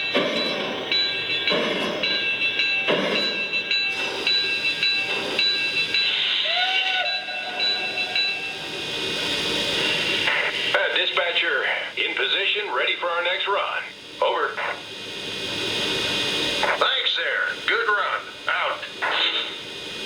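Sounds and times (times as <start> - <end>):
high ringing tones: 0.0 - 10.7
model train steam exhaust chuffs: 3.2 - 20.0.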